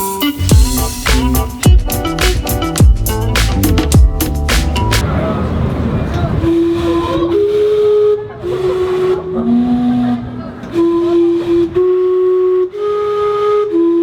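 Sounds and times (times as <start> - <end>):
steam whistles playing a tune: 0.0 - 3.3, 6.4 - 14.0.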